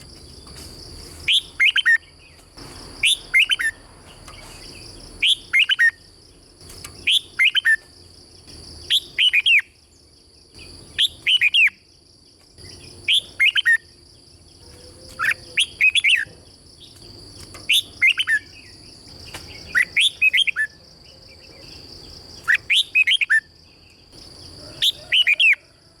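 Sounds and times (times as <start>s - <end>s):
bird singing whistled notes: 1.2s - 2.4s, 3.0s - 6.1s, 7.0s - 7.9s, 8.8s - 10.0s, 10.6s - 11.9s, 12.6s - 13.9s, 14.6s - 17.0s, 17.6s - 23.5s, 24.7s - 25.7s.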